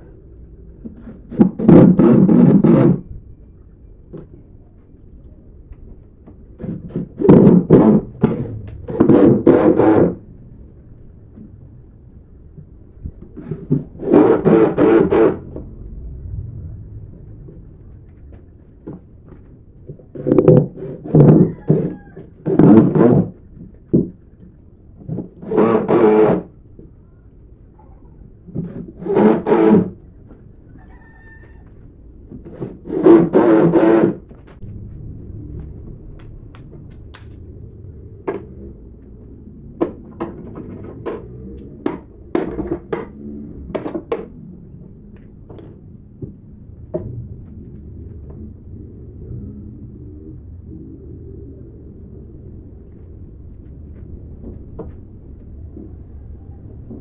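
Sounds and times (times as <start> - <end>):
low steady hum: 0.0 - 22.5, 34.2 - 57.0.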